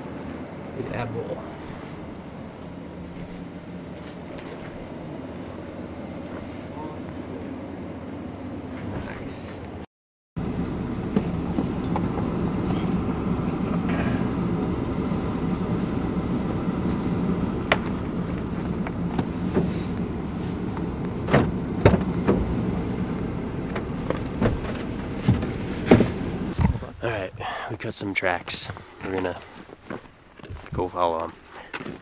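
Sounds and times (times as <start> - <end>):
vehicle running: 0.0 - 9.8, 10.4 - 27.2
sharp clicks and knocks: 20.8 - 26.7.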